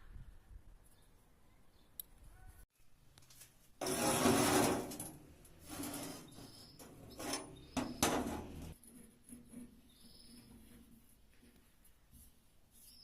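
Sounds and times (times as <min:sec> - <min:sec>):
scraping on a hard surface: 0:03.8 - 0:13.0.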